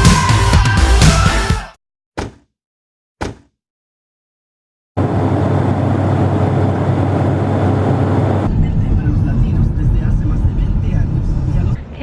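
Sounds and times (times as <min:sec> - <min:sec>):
short thuds: 0:02.2 - 0:02.6, 0:03.2 - 0:03.6.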